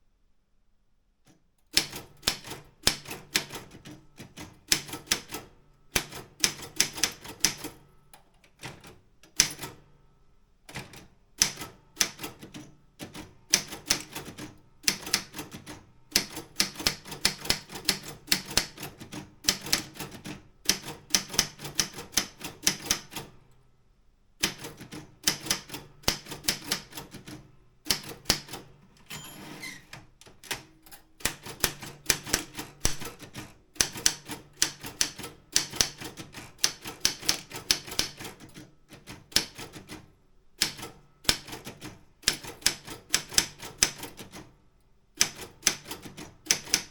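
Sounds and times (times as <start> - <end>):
typewriter key clacks: 29.9 - 38.6, 45.2 - 46.9.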